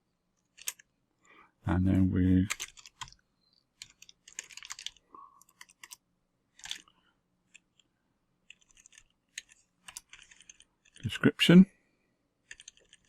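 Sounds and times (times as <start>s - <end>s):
computer keyboard typing: 0.5s - 0.9s, 2.4s - 3.2s, 3.8s - 6.9s, 8.5s - 11.1s, 12.4s - 13.0s.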